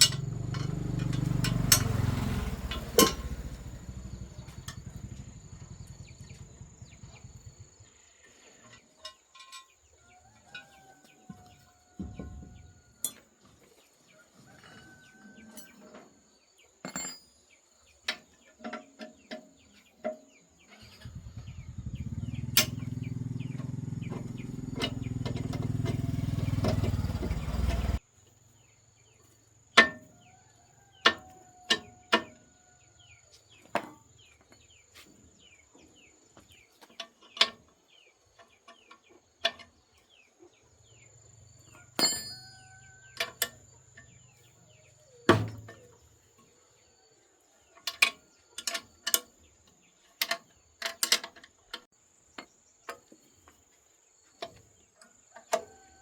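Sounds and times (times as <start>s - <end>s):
tools knocking on metal: 0.0s - 2.0s, 29.8s - 30.1s
low mechanical motor drone: 0.0s - 7.7s, 21.0s - 28.0s.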